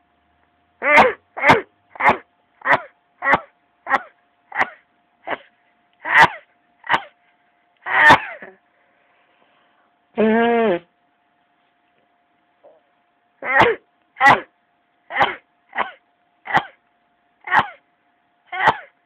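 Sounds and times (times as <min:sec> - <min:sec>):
nasal honks: 0:00.8 - 0:07.2.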